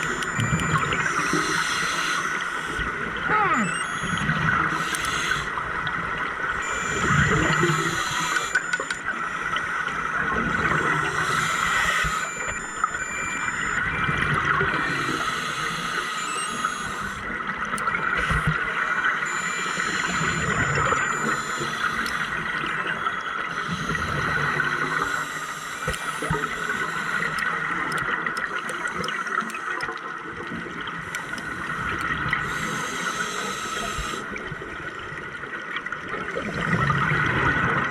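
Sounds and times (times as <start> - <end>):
diver regulator breathing: 0.0 - 5.6, 6.6 - 13.8, 14.8 - 17.3, 19.3 - 28.0, 31.0 - 34.3.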